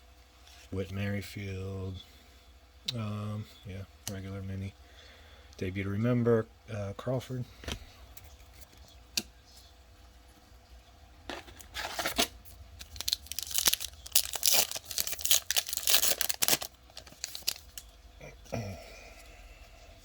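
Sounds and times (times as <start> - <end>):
card pack wrapper tearing and crinkling: 11.3 - 17.9.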